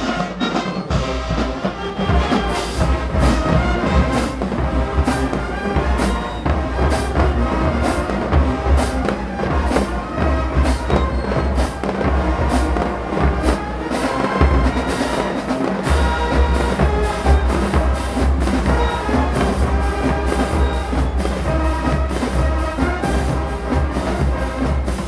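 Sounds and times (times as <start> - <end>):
marching band playing: 0.0 - 25.0.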